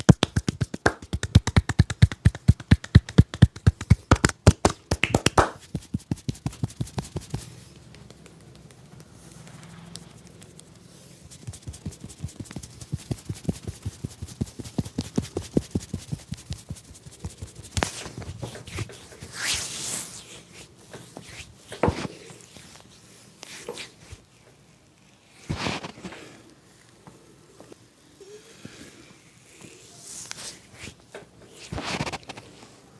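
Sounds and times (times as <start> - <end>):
hands tapping on body: 0.0 - 8.8, 11.3 - 18.9
soft rubbing: 0.1 - 32.9.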